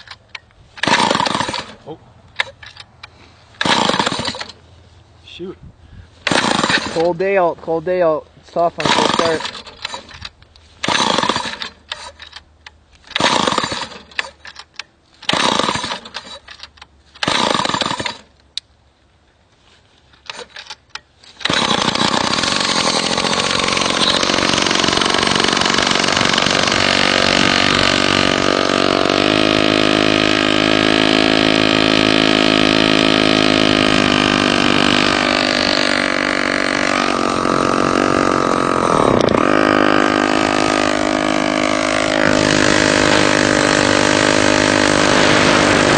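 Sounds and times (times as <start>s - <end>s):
starter cord pulls: 0.0s - 4.6s, 6.2s - 7.2s, 8.6s - 18.6s, 20.1s - 39.8s
two-stroke engine running: 0.8s - 2.7s, 3.6s - 4.6s, 6.2s - 7.2s, 8.6s - 12.2s, 13.1s - 14.4s, 15.3s - 16.4s, 17.2s - 18.3s, 21.4s - 45.9s.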